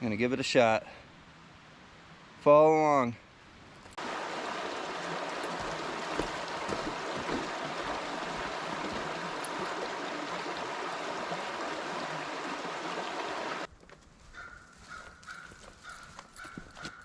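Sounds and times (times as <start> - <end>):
stream rushing: 4.0 - 13.7.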